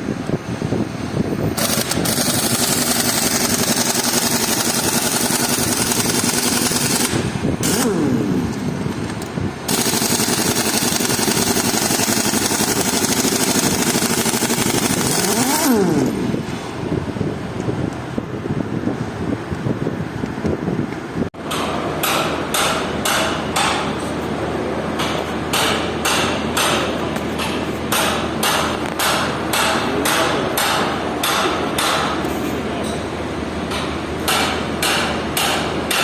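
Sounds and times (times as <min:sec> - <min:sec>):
power tool motor running: 0:01.6 - 0:08.8, 0:09.7 - 0:16.6.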